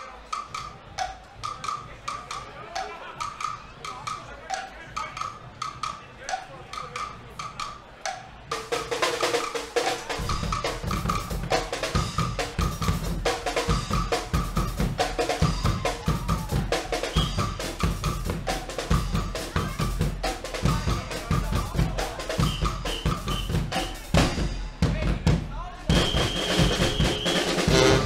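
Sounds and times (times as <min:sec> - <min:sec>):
bass drums and snare drums: 0:00.0 - 0:28.0
brass chords: 0:25.9 - 0:28.0.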